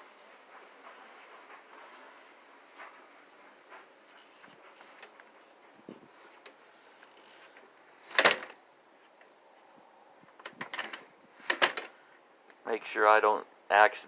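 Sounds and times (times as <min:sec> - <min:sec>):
door clunking: 0:08.0 - 0:08.6.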